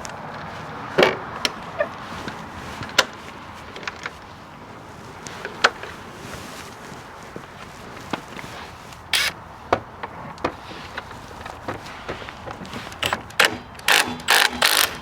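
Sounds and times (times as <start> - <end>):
metal tools clicking and knocking: 9.2 - 9.4.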